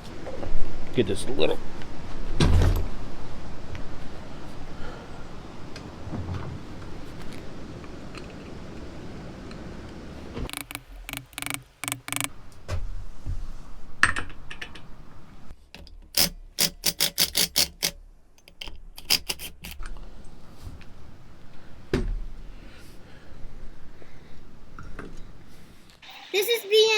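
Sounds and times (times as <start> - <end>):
tools and metal parts clicking: 10.5 - 12.3, 15.8 - 19.9.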